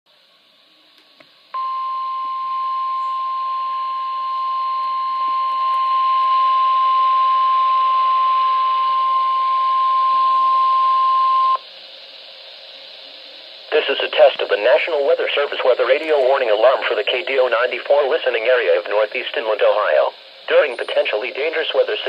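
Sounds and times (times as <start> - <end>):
faint radio hiss: 0.1 - 1.7, 11.8 - 22.0
high steady alarm tone: 1.6 - 11.6, 13.7 - 22.0.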